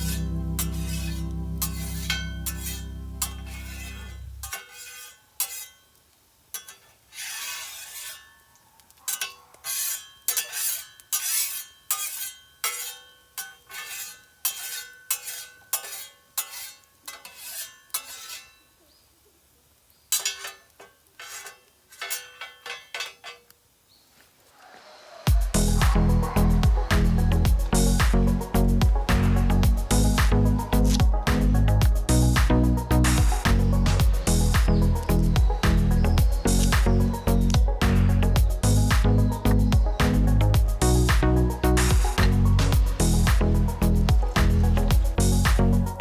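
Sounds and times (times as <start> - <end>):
metal utensil scraping pan: 0.0 - 18.8, 20.1 - 23.5, 33.0 - 37.3.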